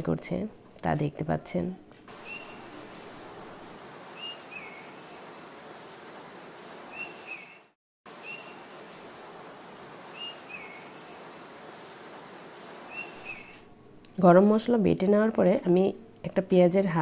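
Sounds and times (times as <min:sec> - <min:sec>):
small birds chirping: 0:02.1 - 0:13.6
outdoor hiss: 0:02.1 - 0:14.3.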